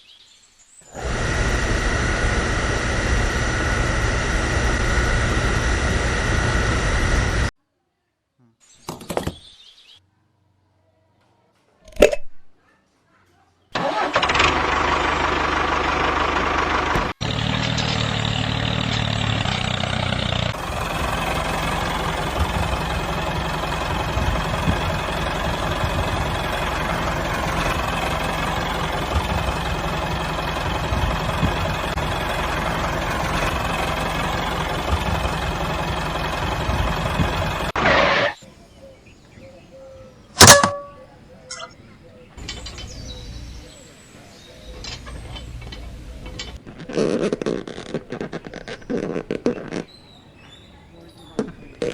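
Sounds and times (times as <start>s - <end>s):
small engine running: 0.9s - 7.5s, 13.8s - 38.4s, 44.6s - 46.6s.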